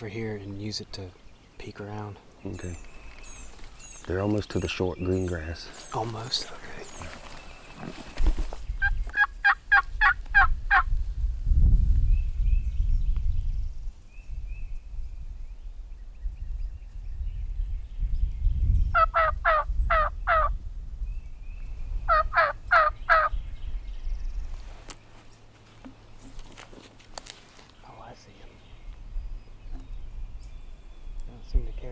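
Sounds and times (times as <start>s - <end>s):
turkey yelps: 8.8s - 10.9s, 19.0s - 20.5s, 22.1s - 23.3s.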